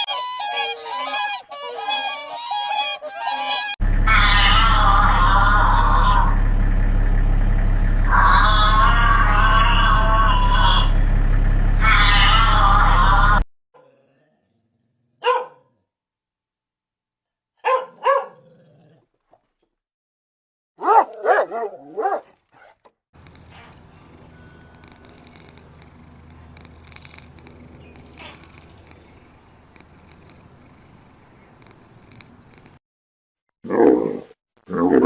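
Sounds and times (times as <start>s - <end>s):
cat purring: 3.8s - 13.4s, 23.2s - 32.8s
cat meowing: 4.0s - 6.4s, 8.1s - 11.0s, 11.8s - 13.4s, 23.2s - 32.8s.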